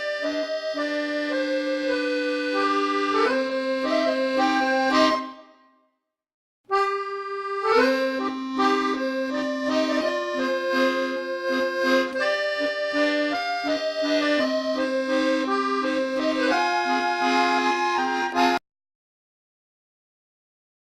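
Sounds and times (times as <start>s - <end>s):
slow melody of held notes: 6.7s - 18.6s.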